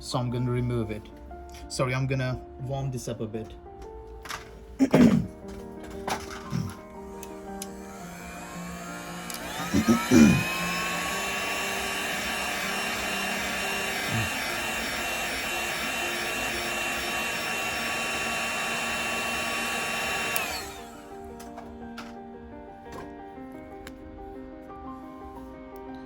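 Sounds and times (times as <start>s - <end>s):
hot-air blower whine and hiss: 6.4s - 22.2s.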